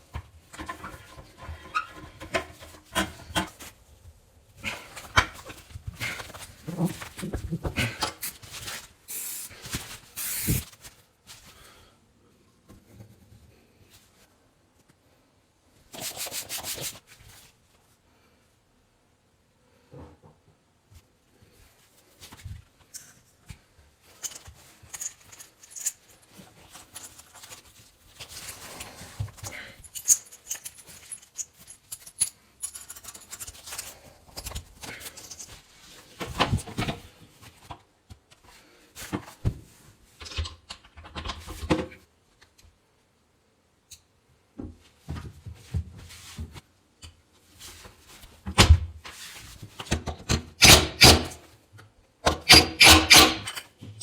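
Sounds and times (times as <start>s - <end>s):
hand tools and fittings clicking: 50.6s - 51.4s, 52.2s - 53.7s.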